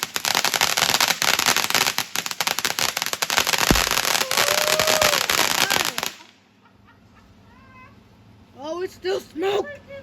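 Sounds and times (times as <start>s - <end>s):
firework crackling: 0.0s - 6.4s
deep thump: 3.6s - 4.1s.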